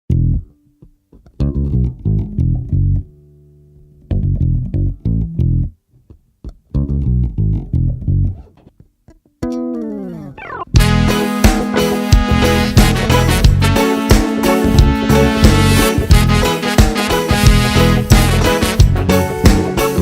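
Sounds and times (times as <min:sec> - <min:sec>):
bass guitar and guitar playing: 0:00.1 - 0:20.0.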